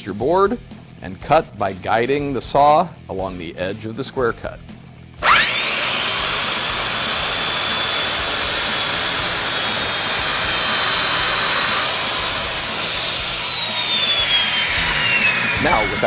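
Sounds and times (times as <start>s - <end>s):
circular saw whining: 5.2s - 16.0s.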